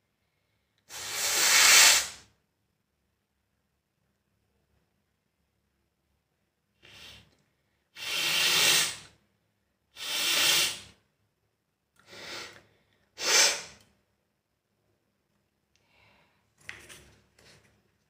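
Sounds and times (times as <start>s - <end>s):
person blowing nose: 0.9s - 2.3s, 8.0s - 9.1s, 10.0s - 11.0s, 12.1s - 12.6s, 13.2s - 13.8s.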